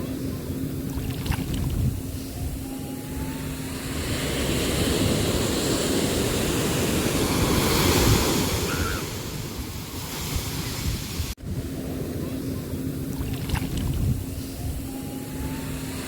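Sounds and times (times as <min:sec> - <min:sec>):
sea waves washing in: 0:00.0 - 0:16.0.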